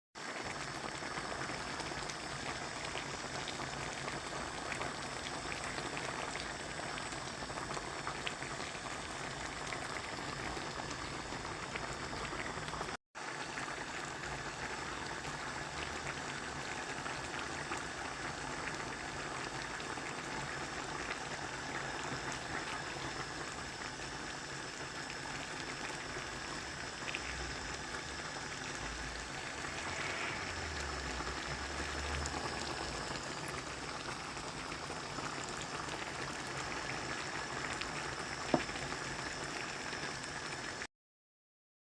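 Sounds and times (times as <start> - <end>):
rain falling: 28.9 - 33.4.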